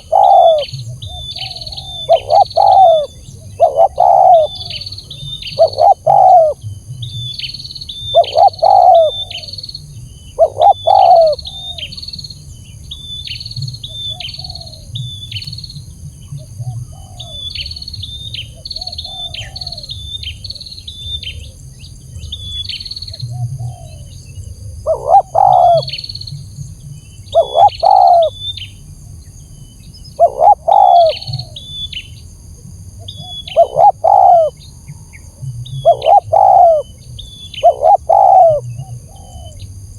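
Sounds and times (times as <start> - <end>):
dove cooing: 0.0 - 6.7, 7.9 - 9.7, 10.3 - 11.9, 16.4 - 17.8, 23.1 - 26.0, 27.3 - 28.4, 30.2 - 31.7, 33.0 - 34.6, 35.6 - 39.8
small bird chirping: 0.0 - 15.8, 16.8 - 28.8, 29.4 - 32.3, 33.0 - 39.8.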